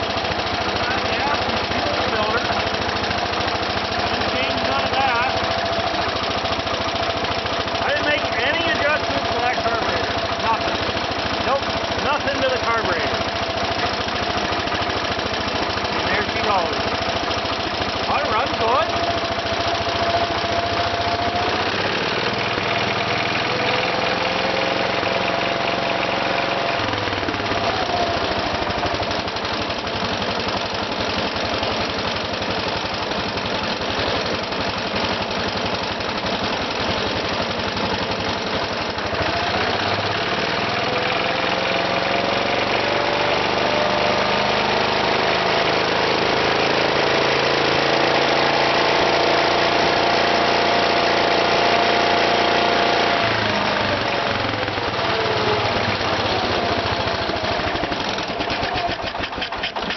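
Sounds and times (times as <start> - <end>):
small engine running: 0.0 - 59.9.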